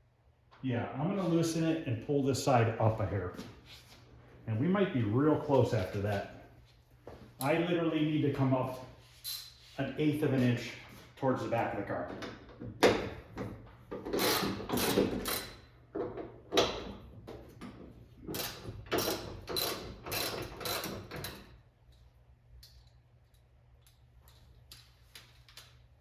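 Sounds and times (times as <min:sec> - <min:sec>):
hand ratchet strokes: 0:13.9 - 0:15.6, 0:18.3 - 0:21.5.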